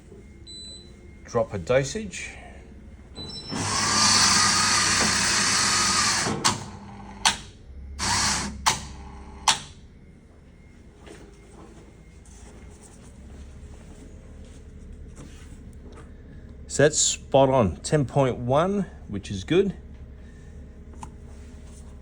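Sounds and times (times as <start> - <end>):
short motor run: 3.4 - 9.6
coffee grinder running: 3.6 - 7.0, 8.0 - 9.4
sharp machine clicks: 3.6 - 9.7.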